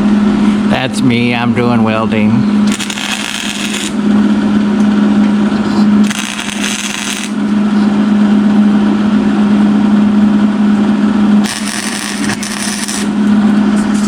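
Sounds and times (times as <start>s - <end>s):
power tool humming: 2.6s - 4.3s, 5.8s - 7.9s, 11.4s - 13.6s.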